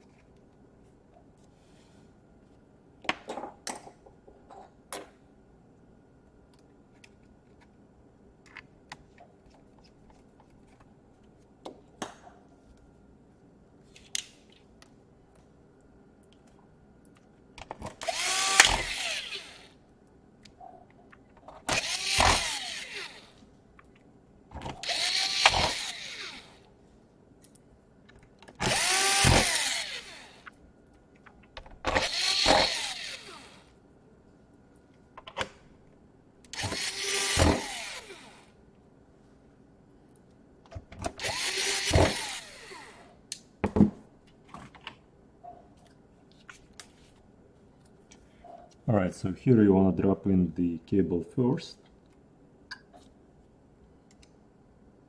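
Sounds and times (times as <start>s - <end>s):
power screwdriver motor: 17.9s - 19.7s, 21.7s - 23.4s, 24.6s - 26.6s, 28.6s - 30.5s, 31.9s - 33.7s, 36.6s - 38.5s, 41.1s - 43.1s.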